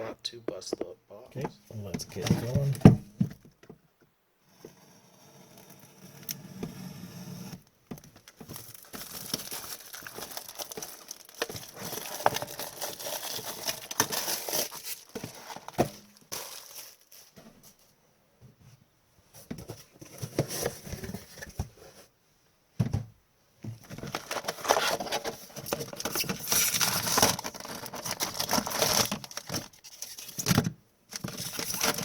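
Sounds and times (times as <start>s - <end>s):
plastic wrapping crinkling and tearing: 8.1s - 17.4s, 23.9s - 32.0s.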